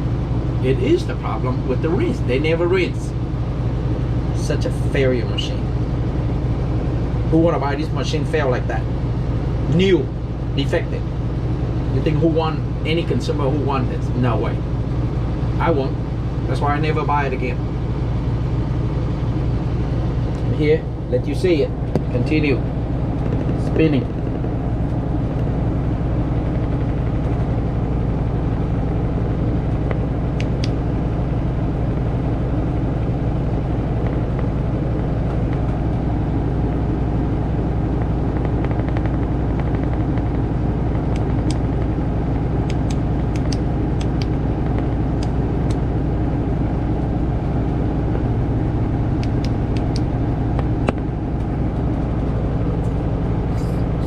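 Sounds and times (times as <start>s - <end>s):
washing machine spinning: 0.0s - 54.0s.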